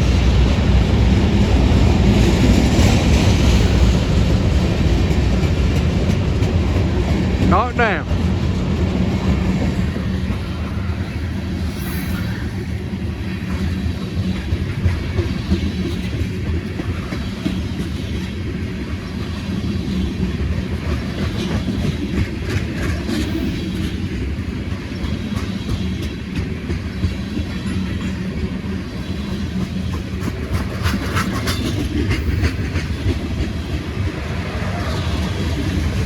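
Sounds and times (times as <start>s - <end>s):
freight train cars rumbling: 0.0s - 36.0s
wheels clicking over rail joints: 19.4s - 36.0s.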